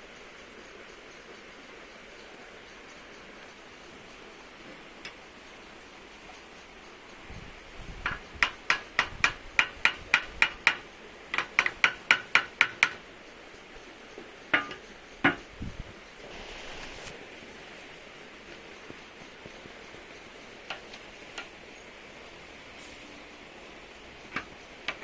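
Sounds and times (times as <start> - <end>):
light metallic tapping: 8.0 - 13.0, 14.1 - 15.5.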